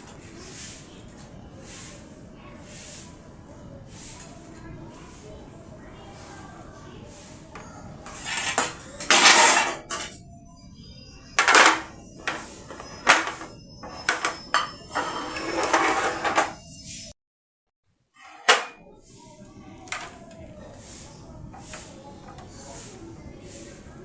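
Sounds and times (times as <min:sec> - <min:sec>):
dishes and cutlery clattering: 0:07.6 - 0:10.3, 0:11.4 - 0:16.7, 0:18.2 - 0:19.0.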